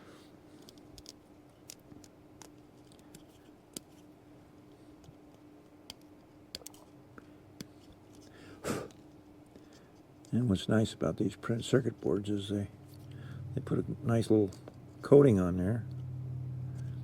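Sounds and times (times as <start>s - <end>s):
steady low hum: 0.0s - 17.0s
small tools clicking and tapping: 0.6s - 4.0s, 5.9s - 6.9s.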